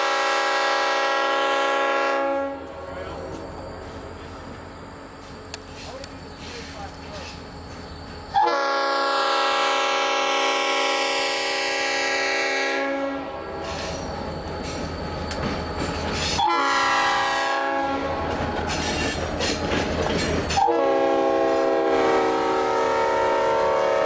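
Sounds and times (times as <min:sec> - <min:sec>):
locomotive air horn blasts: 0:00.0 - 0:02.8, 0:08.4 - 0:13.6, 0:16.4 - 0:18.2, 0:20.5 - 0:24.0
diesel locomotive rumbling: 0:00.0 - 0:24.0.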